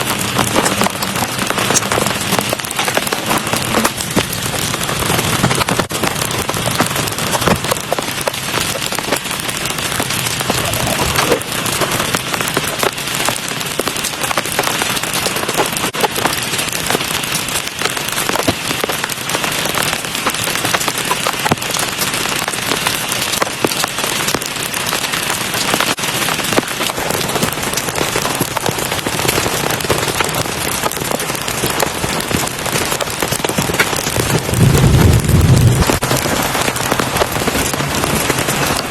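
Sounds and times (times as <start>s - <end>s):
heavy rain falling: 0.0s - 38.9s
raindrops hitting a surface: 0.0s - 38.9s.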